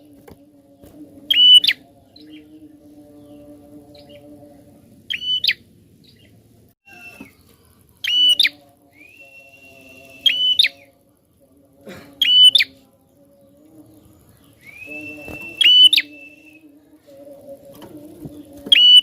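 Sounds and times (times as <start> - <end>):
faint low hum: 0.0 - 19.0
bird whistle: 1.3 - 1.8, 5.1 - 5.6, 6.9 - 7.4, 8.0 - 10.9, 12.2 - 12.7, 14.6 - 16.6, 18.7 - 19.0
bird chirps: 1.3 - 4.3, 5.1 - 10.9, 12.2 - 16.6, 18.3 - 19.0.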